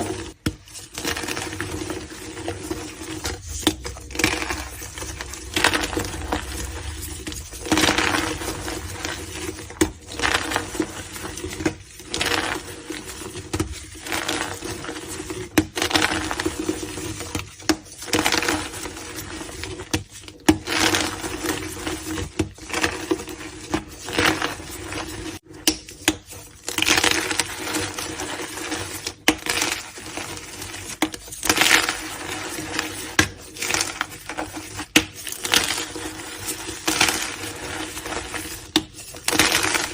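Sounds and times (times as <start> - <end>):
chalk crunching: 0.0 - 12.8.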